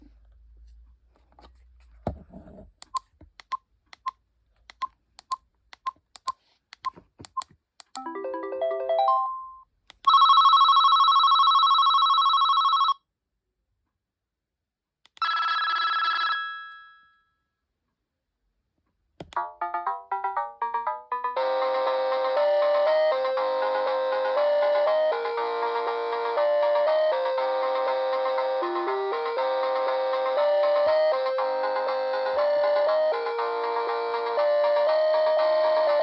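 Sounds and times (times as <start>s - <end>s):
rising electronic melody: 8.0s - 9.6s, 19.4s - 36.0s
warbling electronic telephone ring: 10.1s - 13.0s.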